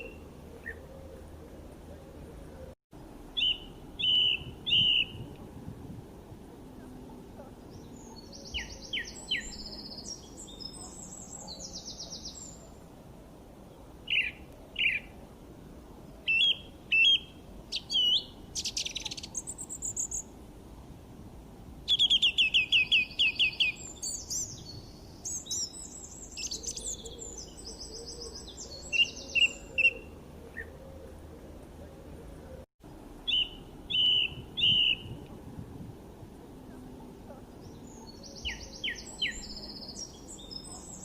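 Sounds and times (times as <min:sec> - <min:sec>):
low steady background hiss: 0:00.0 - 0:41.0
birds chirping and singing: 0:03.4 - 0:05.2, 0:07.4 - 0:12.7, 0:16.3 - 0:20.2, 0:21.9 - 0:30.8, 0:33.3 - 0:35.1, 0:37.3 - 0:41.0.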